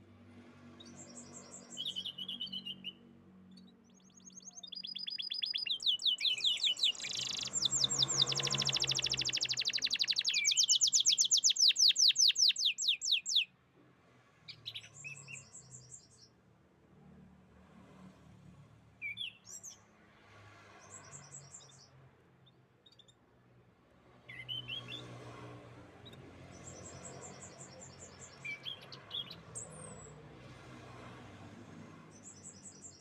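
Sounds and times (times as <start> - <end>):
canary singing trills: 0.9 - 13.5.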